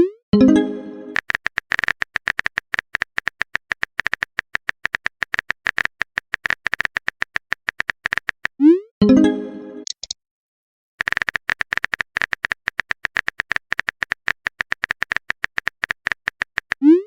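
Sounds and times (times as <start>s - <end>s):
message notification tone: 0.0s - 1.2s, 9.0s - 10.0s
phone keyboard typing clicks: 1.1s - 8.6s, 9.8s - 10.2s, 11.0s - 16.8s.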